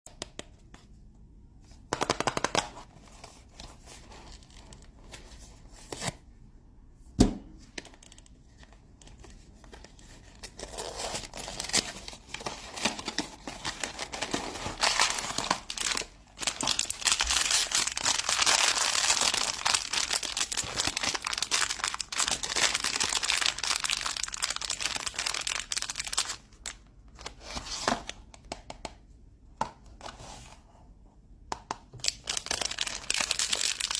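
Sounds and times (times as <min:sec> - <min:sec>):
packaging tearing and crinkling: 0:10.4 - 0:26.6, 0:32.0 - 0:33.9.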